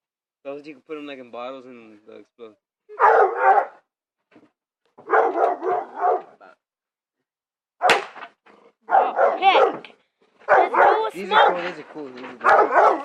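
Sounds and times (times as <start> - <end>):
dog barking: 2.9 - 3.9, 5.0 - 6.5, 8.8 - 11.8, 12.4 - 13.0
sharp crack: 7.8 - 8.4.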